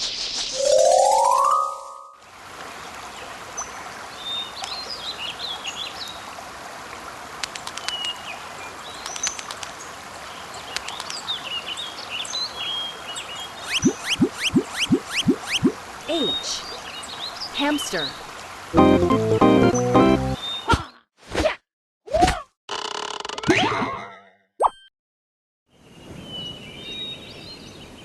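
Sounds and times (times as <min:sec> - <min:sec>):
sharp ticks: 0:07.4 - 0:08.2, 0:09.0 - 0:09.8, 0:10.7 - 0:11.2
small birds chirping: 0:07.4 - 0:18.4.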